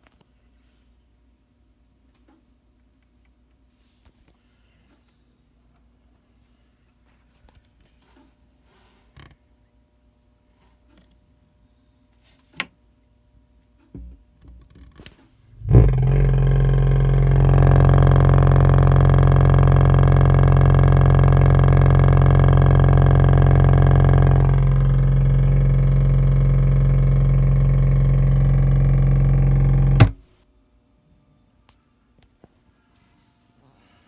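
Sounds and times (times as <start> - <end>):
guitar amp low rumbling drone: 15.5 - 30.3.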